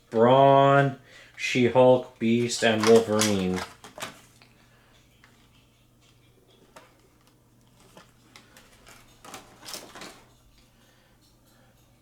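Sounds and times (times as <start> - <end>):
packaging rustling: 2.1 - 4.5, 6.7 - 10.4
plastic figures clicking: 2.4 - 4.2.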